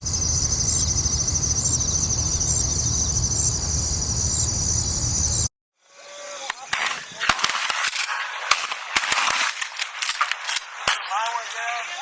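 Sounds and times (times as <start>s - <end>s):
high insect chirp: 0.0s - 7.3s
insects buzzing: 0.0s - 12.0s.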